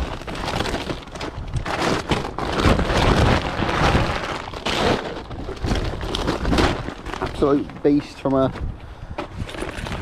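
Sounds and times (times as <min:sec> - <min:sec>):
wind buffeting microphone: 0:05.2 - 0:10.0.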